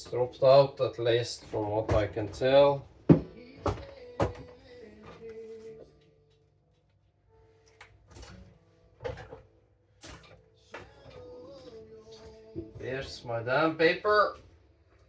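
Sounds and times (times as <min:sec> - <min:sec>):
quiet background music: 0:00.0 - 0:15.0
knocks on a hard surface: 0:03.1 - 0:04.5.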